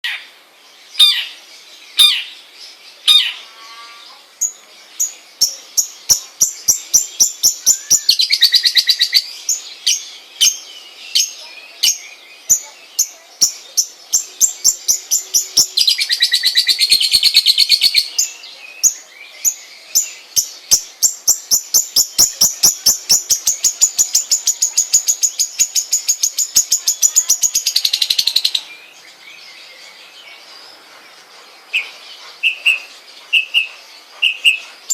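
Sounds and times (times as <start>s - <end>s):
bird high sharp chirps: 5.0s - 28.7s, 31.8s - 34.9s.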